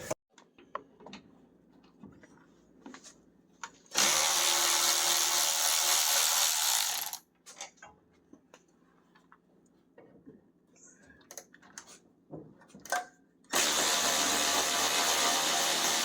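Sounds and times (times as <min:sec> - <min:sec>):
power drill running: 0:03.9 - 0:07.2, 0:13.5 - 0:16.0.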